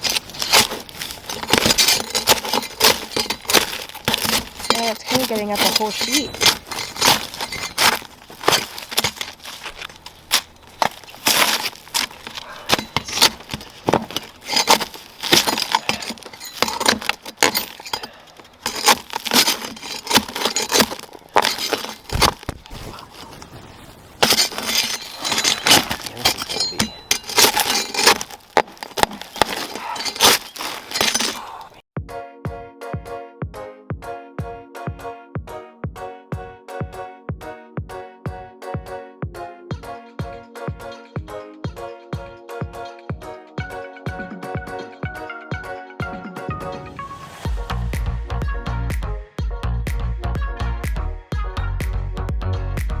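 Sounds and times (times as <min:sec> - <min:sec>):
shingles being scraped off roof: 0:00.0 - 0:23.4, 0:24.2 - 0:31.8.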